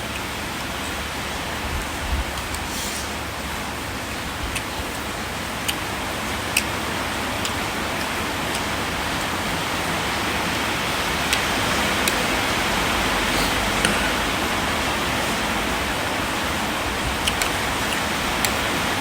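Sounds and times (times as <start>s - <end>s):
steady rushing noise: 0.0s - 19.0s
sharp clicks: 4.4s - 9.3s, 11.2s - 12.3s, 17.1s - 18.9s.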